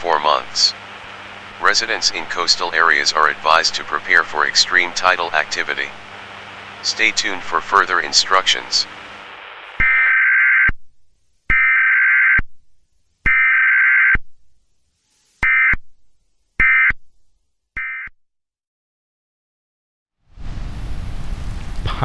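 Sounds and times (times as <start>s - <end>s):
buzzy warbling data tone bursts: 0.0s - 10.2s.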